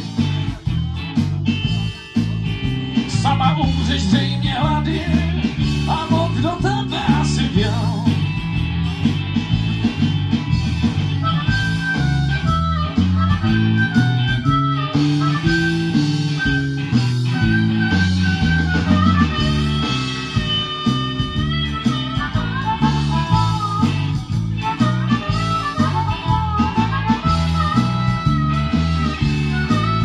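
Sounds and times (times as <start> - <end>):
guitar accompaniment: 0.0 - 30.0
harmonica solo: 10.6 - 30.0.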